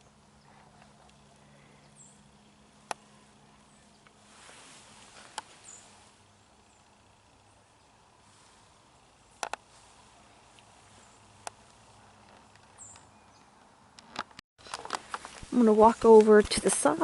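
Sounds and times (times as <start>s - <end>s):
low steady hum: 0.0s - 17.0s
sharp clicks: 9.3s - 9.7s.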